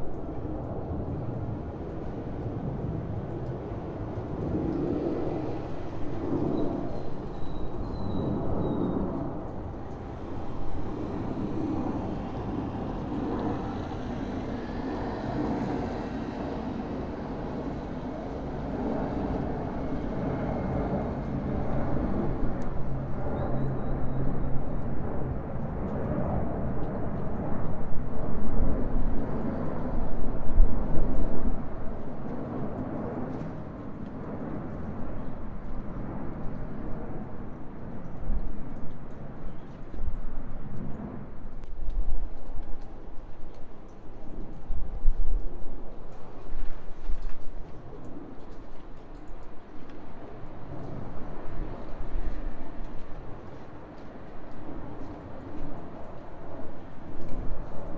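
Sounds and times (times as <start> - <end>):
airliner rumble overhead: 0.0 - 57.9
distant city traffic: 9.3 - 22.4.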